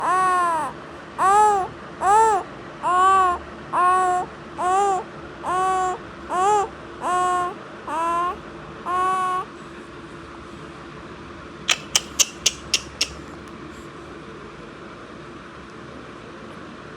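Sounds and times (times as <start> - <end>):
baby wailing: 0.0 - 9.5.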